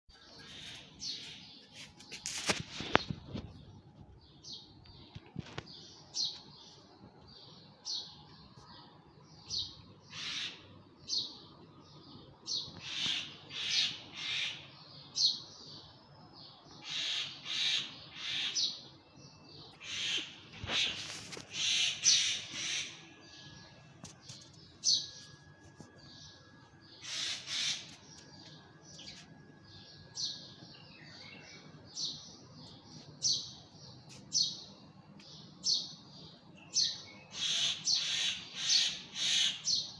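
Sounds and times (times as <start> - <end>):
bird screeching: 27.0 - 27.8.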